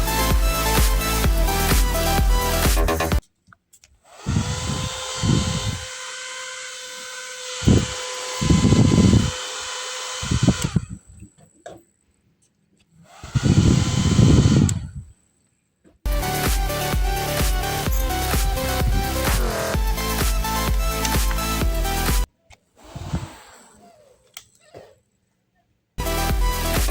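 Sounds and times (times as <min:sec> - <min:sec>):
small motor whining: 0:04.0 - 0:11.5, 0:13.0 - 0:15.1, 0:16.9 - 0:25.0.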